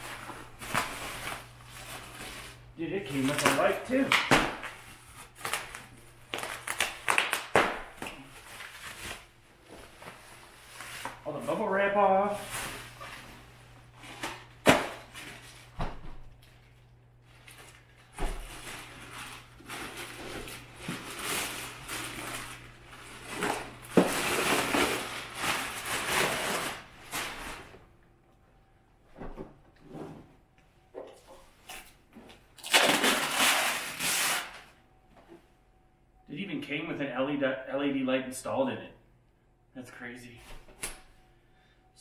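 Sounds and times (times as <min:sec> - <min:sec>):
plastic packaging crinkling: 0:00.0 - 0:09.3, 0:16.4 - 0:27.7, 0:32.6 - 0:34.7.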